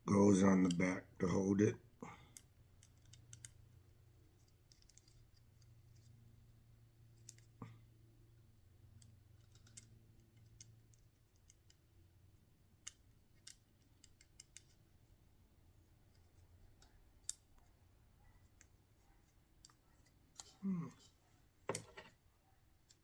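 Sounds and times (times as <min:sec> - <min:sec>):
small metal parts clicking: 0:02.3 - 0:03.6, 0:04.4 - 0:06.1, 0:09.0 - 0:11.8, 0:12.8 - 0:14.8.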